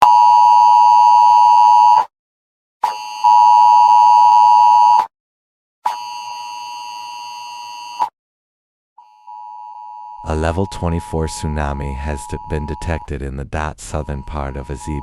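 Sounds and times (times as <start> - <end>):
harsh electronic alert beep: 10.3 - 15.0.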